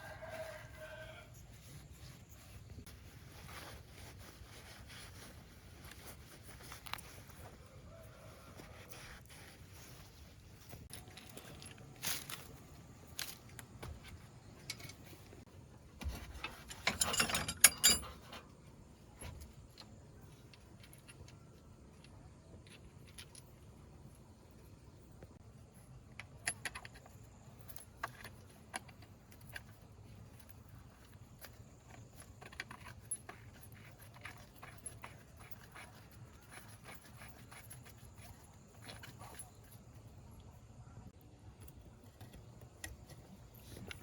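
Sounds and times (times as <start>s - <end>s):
metal tools clinking: 14.1s - 15.4s, 16.0s - 18.5s.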